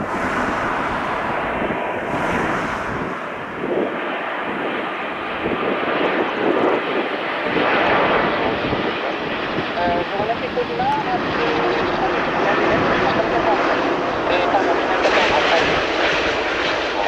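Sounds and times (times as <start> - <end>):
jet engines rushing: 0.0 - 7.9.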